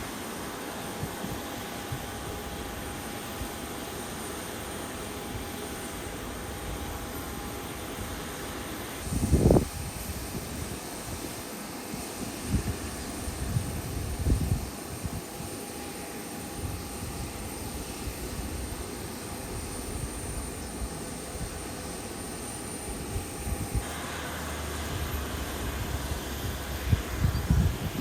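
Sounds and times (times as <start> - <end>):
jet engines whining: 0.0 - 28.0
rushing hiss: 0.0 - 28.0
wind gusting on microphone: 5.3 - 15.6, 22.9 - 28.0.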